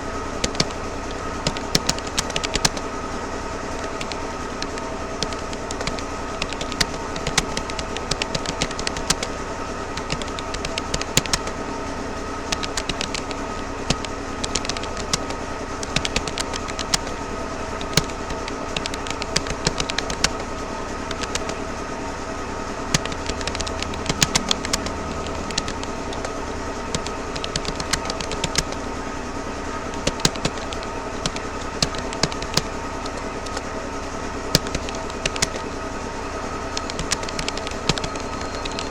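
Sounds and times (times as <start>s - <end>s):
constant hum with steady tones: 0.0s - 38.9s
keyboard key clicks: 0.4s - 0.8s, 1.4s - 2.8s, 3.8s - 9.4s, 10.0s - 11.6s, 12.5s - 17.2s, 17.8s - 20.5s, 21.1s - 21.6s, 22.9s - 28.8s, 29.9s - 33.7s, 34.5s - 35.7s, 36.8s - 38.9s.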